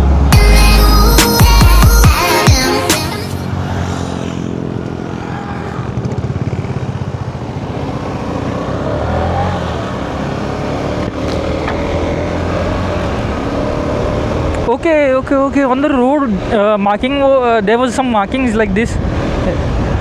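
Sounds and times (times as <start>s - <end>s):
motorcycle engine running: 0.0s - 14.8s.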